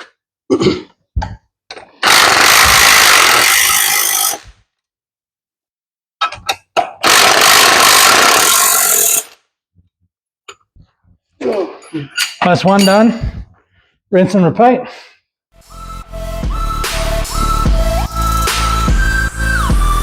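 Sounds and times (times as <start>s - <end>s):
angle grinder cutting steel: 7.0s - 9.4s.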